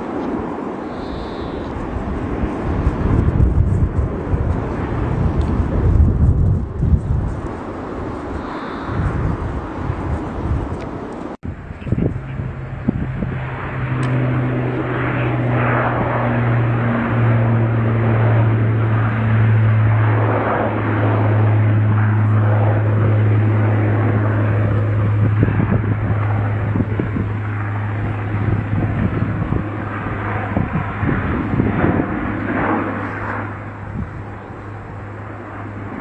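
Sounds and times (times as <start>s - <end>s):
jet engine low hum: 0.0s - 36.0s
jet engine rushing roar: 0.0s - 36.0s.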